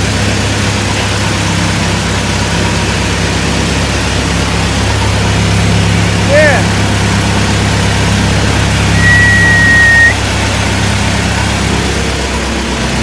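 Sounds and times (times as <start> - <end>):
combine harvester engine running: 0.0 - 13.0
high whistle-like tone: 9.0 - 10.2.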